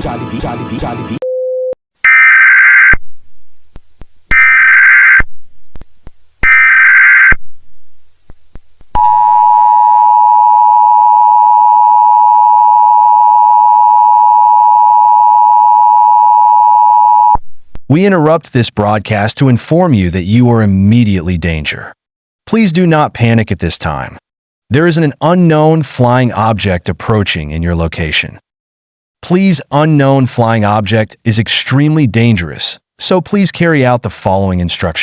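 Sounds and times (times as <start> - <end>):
harsh data-tone bursts: 4.3 - 5.2, 6.4 - 7.4.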